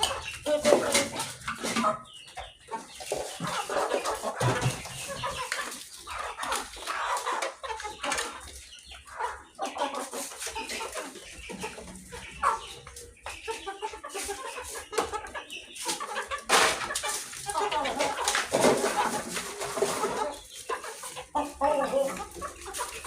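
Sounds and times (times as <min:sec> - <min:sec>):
chickens clucking: 0:00.0 - 0:23.0.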